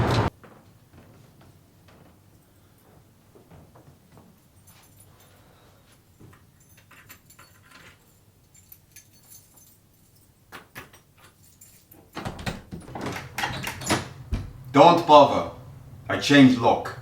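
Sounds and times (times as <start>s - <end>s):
keys and tools jangling at lock: 4.3s - 14.2s.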